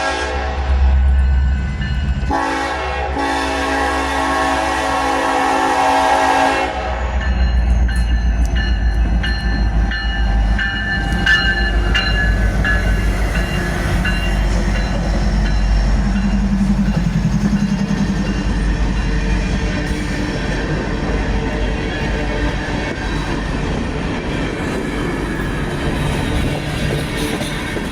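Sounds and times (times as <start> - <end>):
locomotive horn: 0.0 - 0.8, 2.3 - 7.2
train rumbling past: 0.0 - 27.9.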